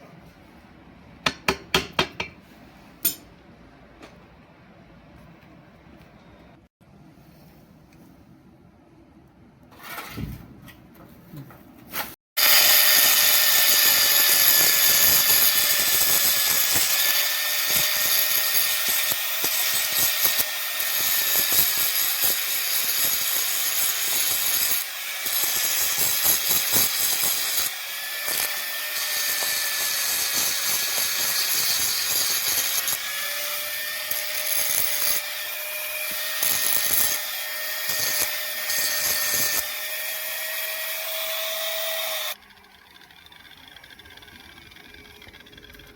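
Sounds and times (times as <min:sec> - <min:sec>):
power tool grinding: 0:12.4 - 0:45.9.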